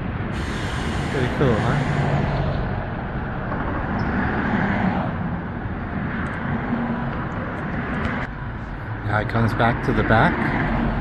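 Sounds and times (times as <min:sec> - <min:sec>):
diesel truck engine running: 0:00.0 - 0:03.2.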